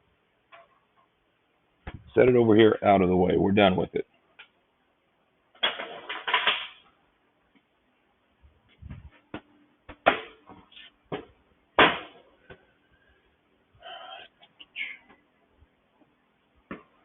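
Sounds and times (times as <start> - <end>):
dull thump: 1.8 - 2.2
tools clattering on workbench: 5.6 - 6.9.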